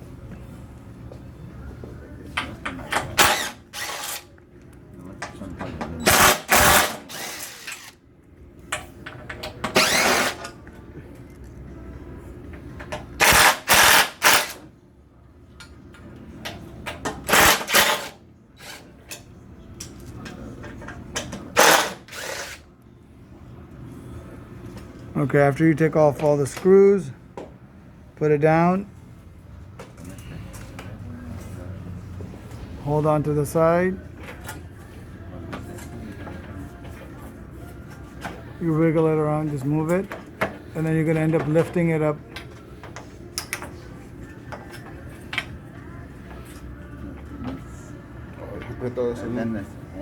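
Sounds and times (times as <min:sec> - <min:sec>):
power drill whirring: 0:03.2 - 0:04.2, 0:06.1 - 0:07.9, 0:09.8 - 0:10.4, 0:21.6 - 0:22.6.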